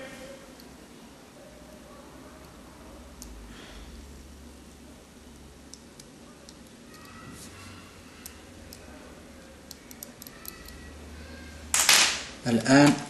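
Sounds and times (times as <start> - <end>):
small phone parts clicking: 9.6 - 10.9.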